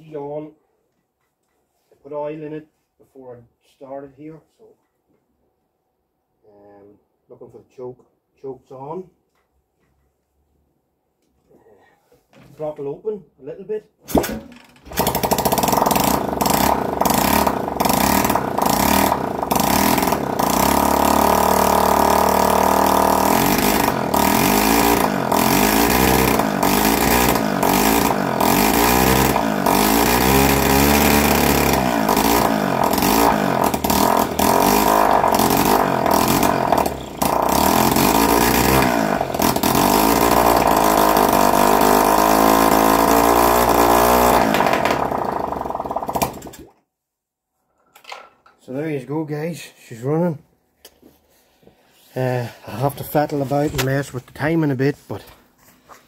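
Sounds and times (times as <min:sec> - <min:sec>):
motorcycle engine revs wavering: 0:14.9 - 0:46.5.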